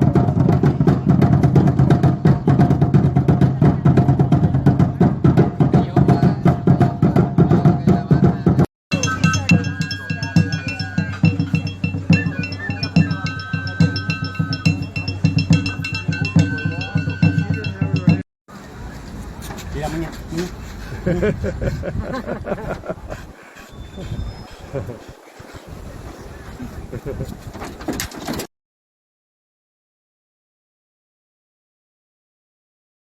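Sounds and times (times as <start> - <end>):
fast percussion beat: 0.0 - 18.2
high held tones: 8.9 - 18.2.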